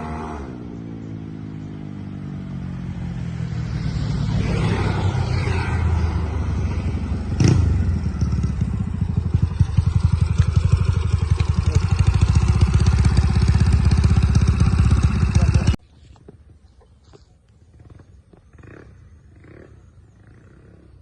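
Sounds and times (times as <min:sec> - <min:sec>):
scooter engine running: 0:06.5 - 0:15.8.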